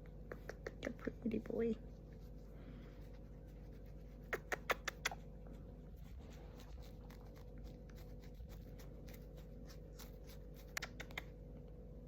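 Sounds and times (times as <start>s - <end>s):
steady low hum: 0.0s - 12.0s
faint scratching and rustling: 1.2s - 4.6s, 5.4s - 10.9s.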